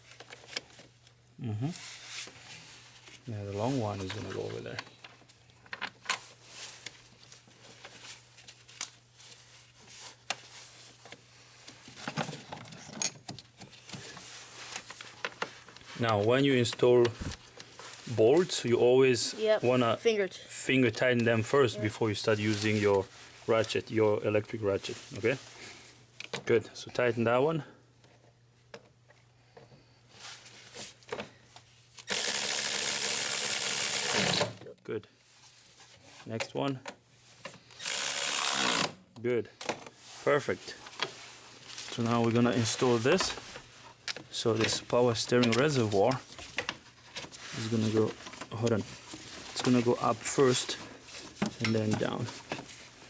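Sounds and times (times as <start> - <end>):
tools and bolts rattling: 12.0 - 13.7
electric ratchet running: 32.1 - 34.6, 37.8 - 39.0.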